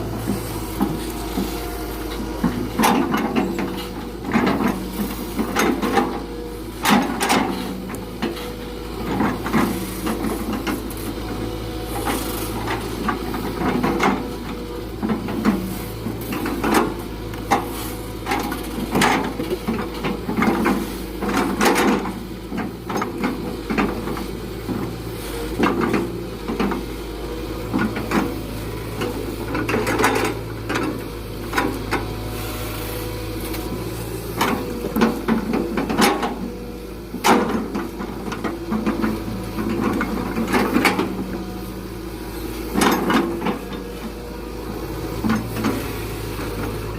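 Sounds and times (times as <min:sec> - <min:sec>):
excavator engine running: 0:00.0 - 0:46.9.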